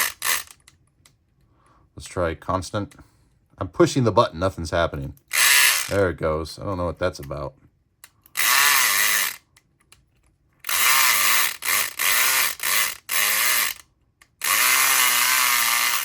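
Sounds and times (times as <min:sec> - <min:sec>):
electric lock pick gun buzzing: 0:00.0 - 0:00.6, 0:05.3 - 0:05.9, 0:08.3 - 0:09.5, 0:10.6 - 0:16.0.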